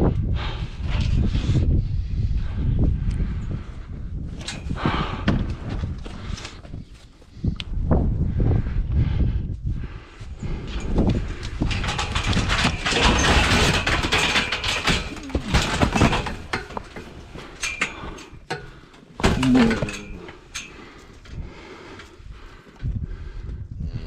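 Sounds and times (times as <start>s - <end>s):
knocks and rattling clatter: 4.3s - 6.8s, 10.4s - 22.9s.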